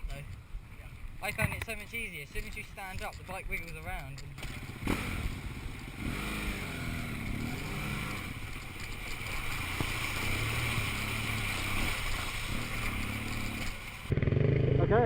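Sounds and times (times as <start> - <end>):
motorcycle engine revving: 4.4 - 15.0.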